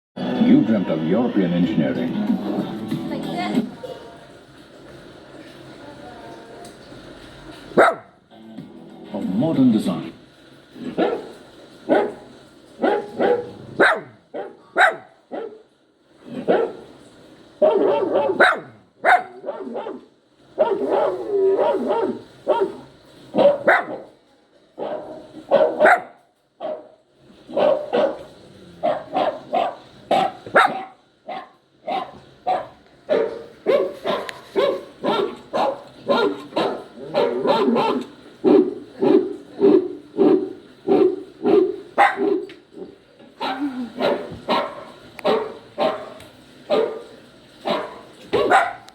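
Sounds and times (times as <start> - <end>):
puppy yelping and barking: 28.9 - 38.7.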